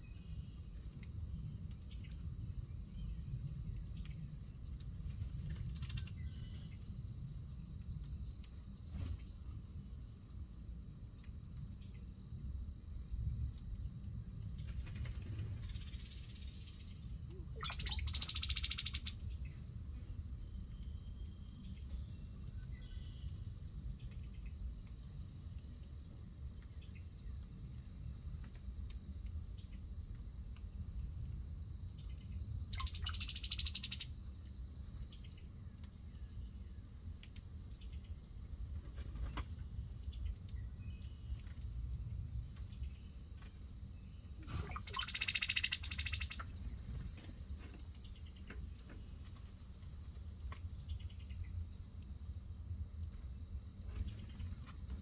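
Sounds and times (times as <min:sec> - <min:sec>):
loud bird calling: 0:17.6 - 0:19.1, 0:32.8 - 0:34.0, 0:44.5 - 0:46.6
high-pitched insect trill: 0:17.6 - 0:19.2, 0:32.4 - 0:35.0, 0:44.0 - 0:47.5.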